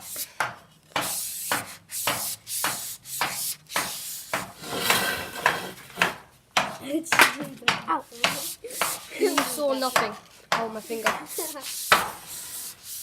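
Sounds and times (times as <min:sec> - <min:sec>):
sandpaper rubbing on metal: 0:01.0 - 0:06.0, 0:08.0 - 0:13.0.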